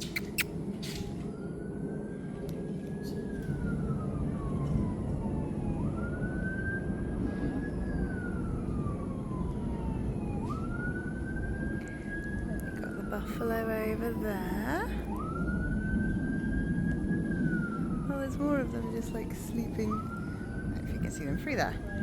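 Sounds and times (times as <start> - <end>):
emergency siren wailing: 0.1 - 22.0.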